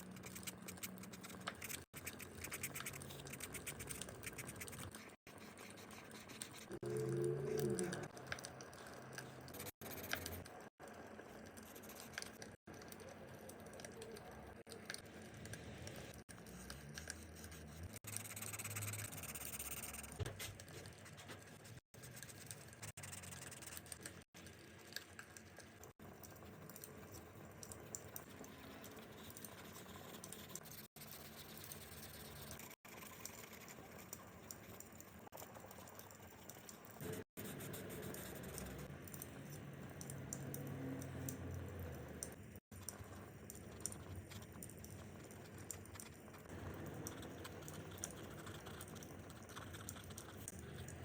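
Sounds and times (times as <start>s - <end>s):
coloring strokes scratching paper: 0.0s - 8.1s, 9.2s - 10.7s, 11.4s - 12.6s, 16.1s - 24.2s, 28.1s - 34.0s, 37.0s - 38.9s.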